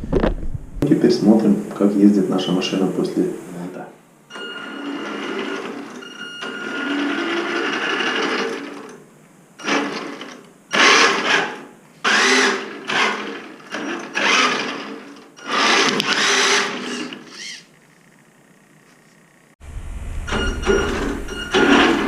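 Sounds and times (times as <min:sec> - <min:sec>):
toy car electric motor whining: 0:04.6 - 0:08.8, 0:09.6 - 0:17.7.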